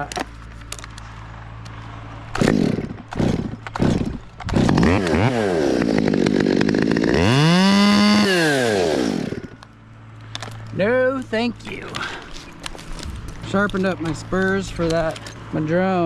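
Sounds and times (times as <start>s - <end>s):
chainsaw starting and revving: 2.3s - 9.6s.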